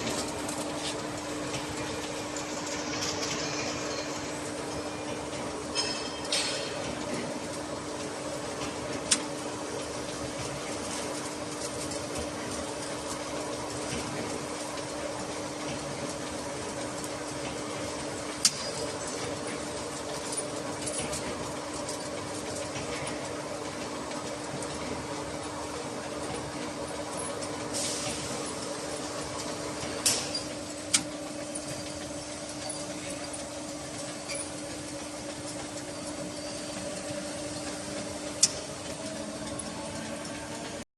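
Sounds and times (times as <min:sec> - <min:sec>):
bottling machinery running: 0:00.0 - 0:40.8.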